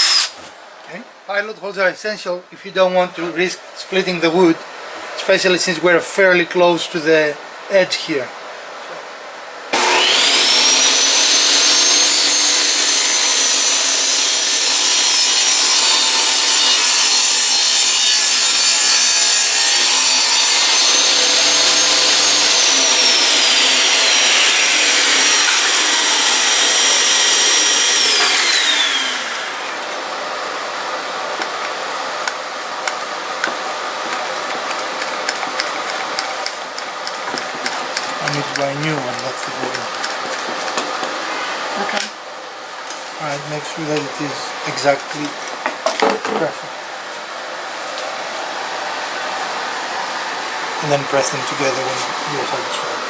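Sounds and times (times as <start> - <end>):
power saw cutting wood: 0.0 - 0.4, 9.7 - 30.0, 34.2 - 42.1, 50.8 - 53.0.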